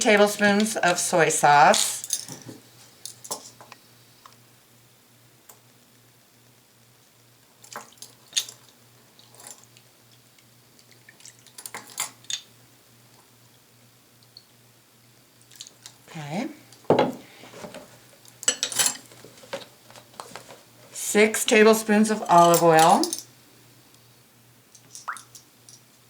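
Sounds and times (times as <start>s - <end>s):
liquid dripping into bowl: 25.0s - 25.4s.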